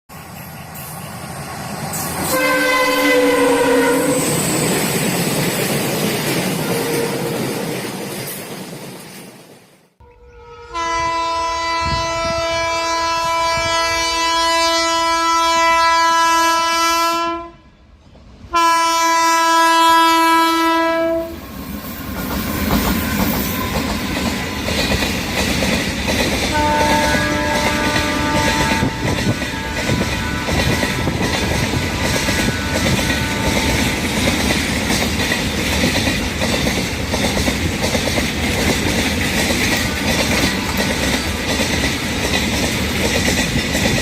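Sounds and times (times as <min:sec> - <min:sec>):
passing train rumbling: 0:00.1 - 0:44.0
locomotive air horn blasts: 0:02.2 - 0:04.4, 0:10.0 - 0:17.8, 0:18.5 - 0:21.4, 0:26.5 - 0:31.3, 0:32.2 - 0:33.9
faint horn-like tone: 0:10.0 - 0:17.7
wheels clacking over rail joints: 0:21.7 - 0:44.0.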